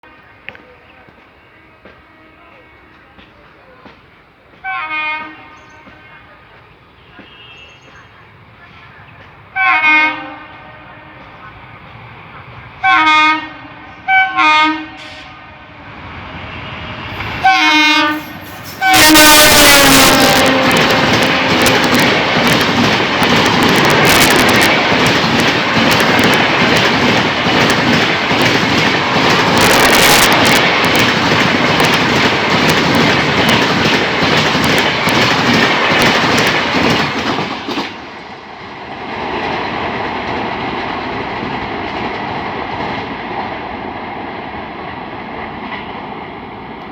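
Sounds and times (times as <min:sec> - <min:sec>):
passing train rush: 0:00.0 - 0:46.9
locomotive twin-tone horn: 0:01.4 - 0:03.0, 0:04.6 - 0:06.4, 0:07.0 - 0:08.0, 0:09.5 - 0:11.5, 0:12.8 - 0:15.8, 0:17.1 - 0:22.4.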